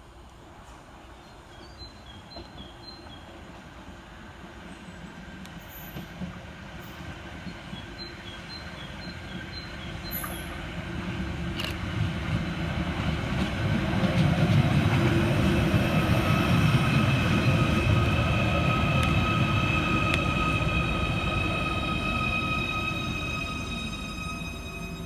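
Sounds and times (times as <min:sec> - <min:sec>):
train wheels rumbling: 0:02.3 - 0:25.0.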